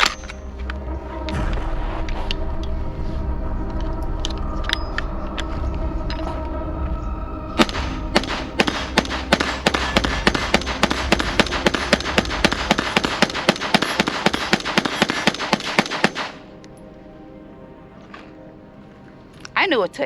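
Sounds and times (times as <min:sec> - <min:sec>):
rifle firing rapid shots: 0:07.6 - 0:16.4.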